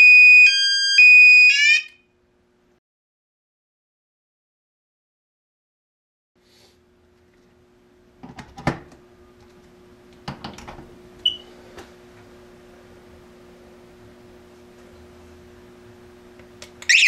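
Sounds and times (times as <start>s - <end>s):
steady low hum: 6.4s - 16.9s.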